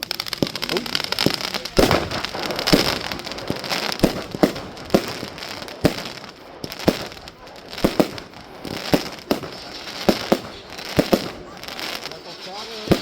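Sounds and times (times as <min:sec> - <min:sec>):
firework crackling and popping: 0:00.0 - 0:13.0.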